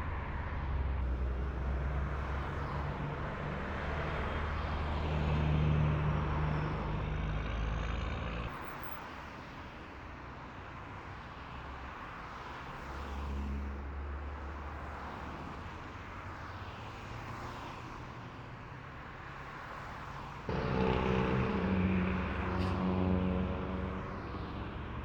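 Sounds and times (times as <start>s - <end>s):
road traffic passing: 0.1s - 25.0s
heavy vehicle engine drone: 1.0s - 8.6s, 20.4s - 25.0s.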